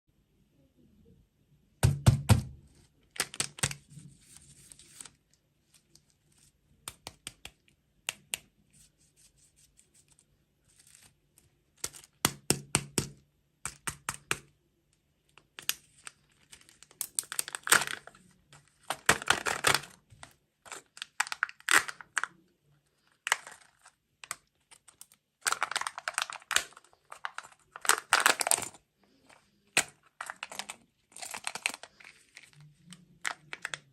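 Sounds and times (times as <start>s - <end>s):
faint low hum: 0.1s - 3.2s
crunching sweets: 2.5s - 8.6s, 9.9s - 33.9s
packaging crinkling: 3.1s - 6.5s, 15.4s - 22.4s, 23.0s - 33.9s.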